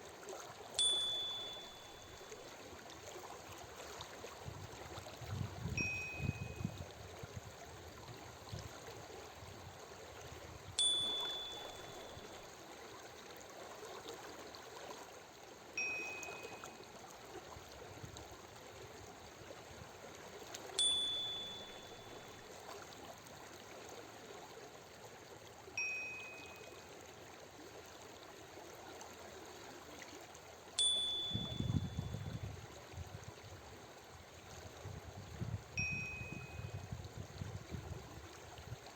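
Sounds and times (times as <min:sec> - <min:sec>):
flowing water: 0:00.0 - 0:38.9
chime ringing: 0:00.8 - 0:02.4, 0:05.8 - 0:06.7, 0:10.8 - 0:12.4, 0:15.8 - 0:16.8, 0:20.8 - 0:22.4, 0:25.8 - 0:26.7, 0:30.8 - 0:32.4, 0:35.8 - 0:36.8.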